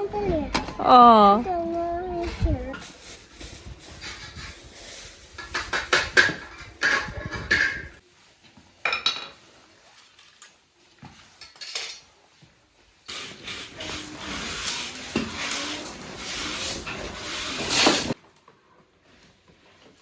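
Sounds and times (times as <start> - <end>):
metal tools clinking and clattering: 5.4 - 8.0, 11.4 - 12.1.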